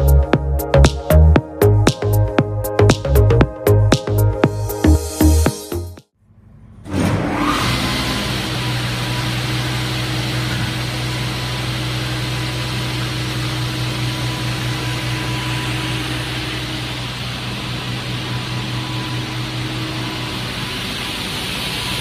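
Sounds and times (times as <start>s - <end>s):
saw motor hum: 7.2s - 22.0s.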